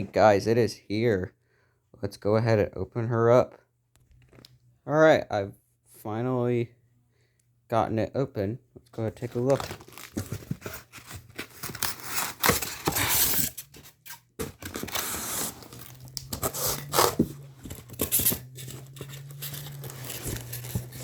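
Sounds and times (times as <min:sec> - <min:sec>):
packing material tearing and rustling: 0:09.2 - 0:21.0.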